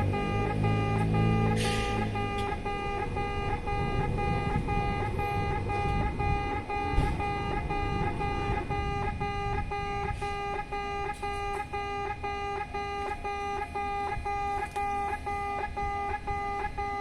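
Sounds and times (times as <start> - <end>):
level crossing alarm beeping: 0.0 - 17.0.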